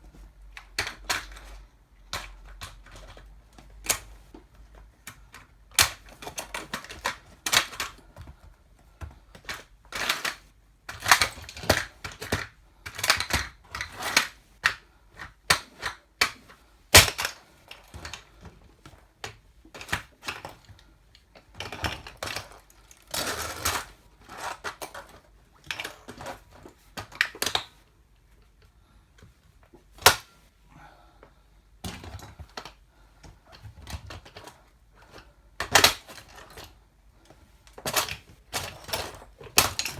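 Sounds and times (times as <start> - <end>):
plastic toy cracking underfoot: 5.0 - 8.4, 9.0 - 18.6, 30.0 - 30.3, 35.6 - 36.7.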